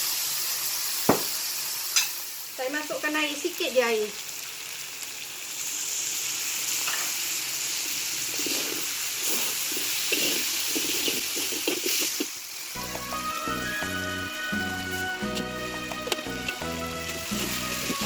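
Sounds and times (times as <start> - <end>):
chillies sizzling in a hot pan: 0.0 - 18.0
stirring strokes in a pan: 7.8 - 18.0.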